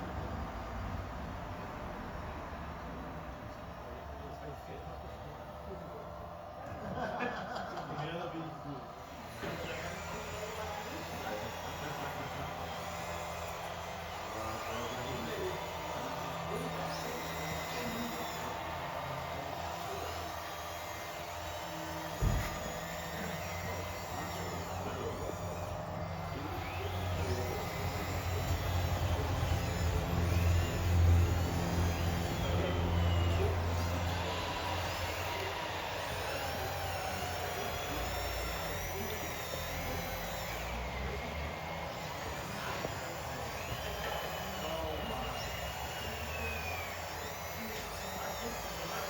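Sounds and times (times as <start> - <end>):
small electric motors whining: 0.0 - 49.0
thump: 22.2 - 22.6.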